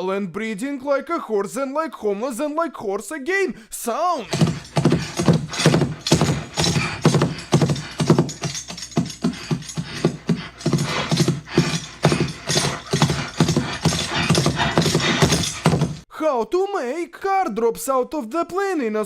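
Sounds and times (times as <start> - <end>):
rhythmic hoofbeats: 4.2 - 16.0
horse-like breathing: 4.2 - 16.1
clinking metal tack: 4.3 - 16.0.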